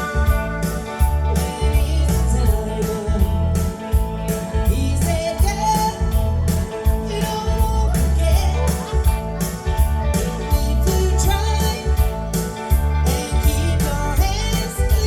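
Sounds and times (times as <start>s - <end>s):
bass guitar: 0.0s - 15.0s
electric guitar: 0.0s - 15.0s
person singing: 0.0s - 15.0s
steady drum beat: 0.0s - 15.0s.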